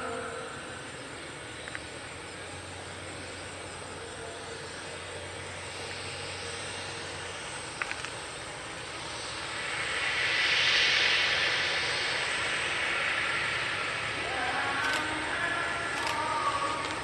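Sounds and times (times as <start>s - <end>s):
jet engines passing: 0.0s - 17.0s.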